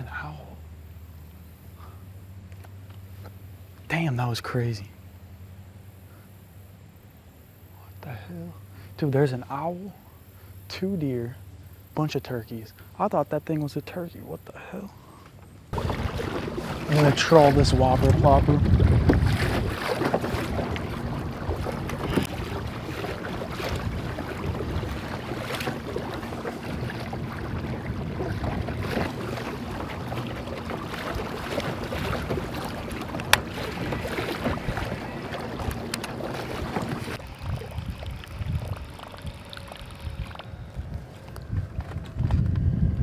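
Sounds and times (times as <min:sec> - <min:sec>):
water splashing against kayak: 0:15.7 - 0:43.0
wind buffeting microphone: 0:15.7 - 0:43.0.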